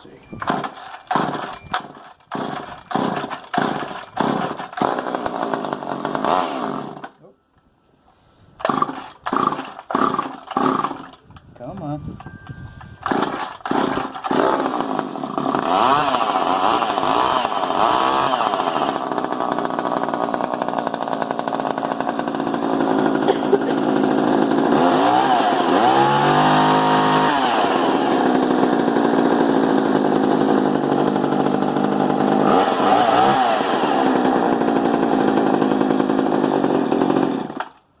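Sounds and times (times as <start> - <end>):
chainsaw engine revving: 0.4 - 7.2, 8.6 - 11.2, 13.0 - 37.8.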